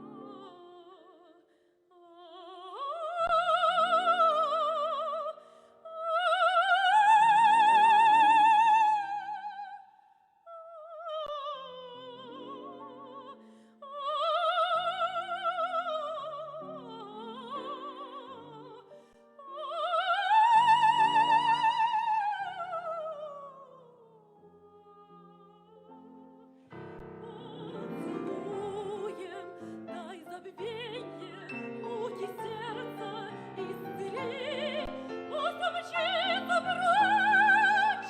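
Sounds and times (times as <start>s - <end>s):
piano accompaniment: 24.7s - 38.0s
operatic voice singing: 27.0s - 38.0s.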